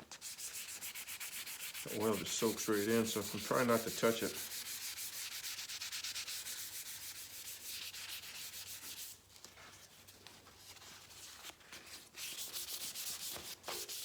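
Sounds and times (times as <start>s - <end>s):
sandpaper rubbing on paint: 0.1s - 9.2s, 10.7s - 14.0s.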